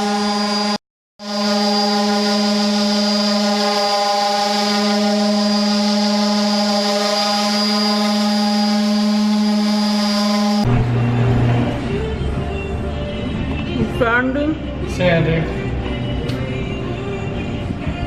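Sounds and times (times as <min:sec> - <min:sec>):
electric sander droning: 0:00.0 - 0:12.1.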